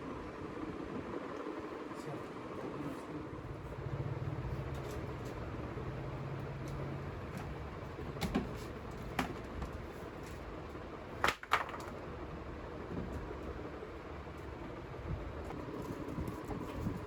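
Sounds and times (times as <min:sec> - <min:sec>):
workshop background noise: 0:02.8 - 0:12.0.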